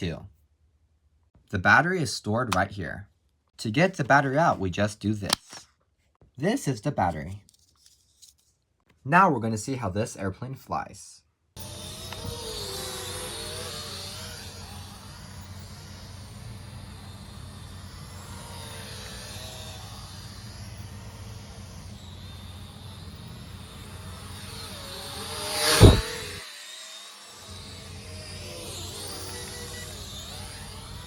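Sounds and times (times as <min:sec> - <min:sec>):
toy airplane propellers whining: 0:11.6 - 0:31.0.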